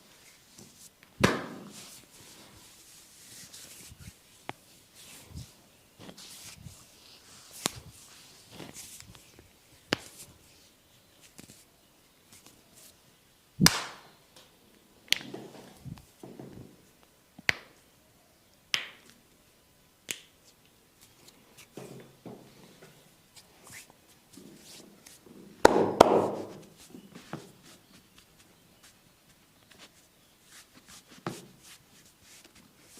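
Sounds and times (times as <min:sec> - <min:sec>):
hands slapping bare skin: 0:01.1 - 0:01.9, 0:07.6 - 0:07.9, 0:09.9 - 0:10.3, 0:13.6 - 0:14.1, 0:15.1 - 0:15.3, 0:17.4 - 0:17.8, 0:18.7 - 0:19.2, 0:20.0 - 0:21.1, 0:25.0 - 0:27.5.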